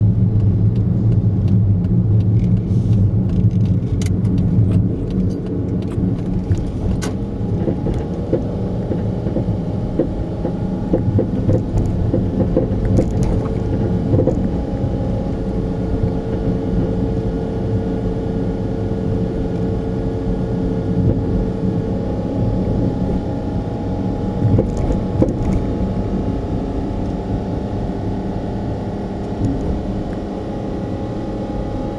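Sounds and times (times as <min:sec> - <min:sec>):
suspension rattling and knocking: 0:00.0 - 0:16.6, 0:24.4 - 0:27.2, 0:29.2 - 0:30.2
car road and engine hum: 0:00.0 - 0:31.9.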